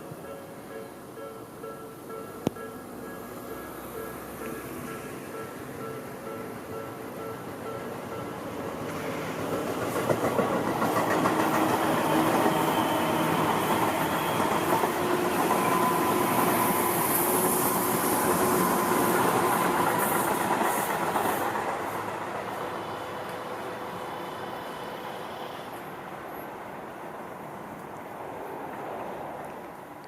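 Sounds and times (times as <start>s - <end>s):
train wheels clattering over rails: 3.0s - 23.8s.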